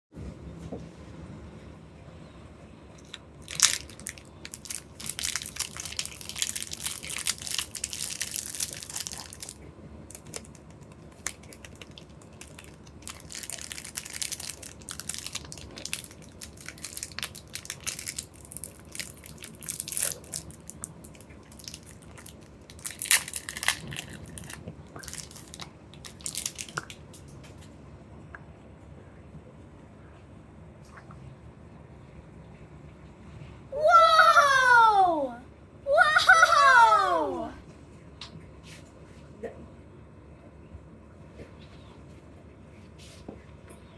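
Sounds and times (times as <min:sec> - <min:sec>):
plastic packaging crinkling: 0:03.0 - 0:27.0.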